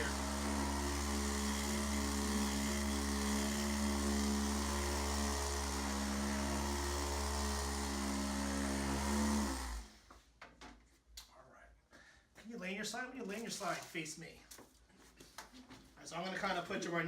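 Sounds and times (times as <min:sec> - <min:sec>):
electric massager motor buzz: 0:00.0 - 0:10.0.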